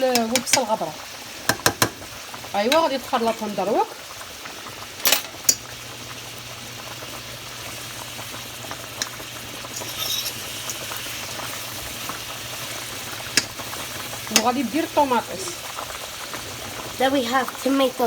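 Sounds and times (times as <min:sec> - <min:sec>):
shrimp sizzling in oil: 0:00.0 - 0:18.0
utensil knocking against pan: 0:01.5 - 0:02.0.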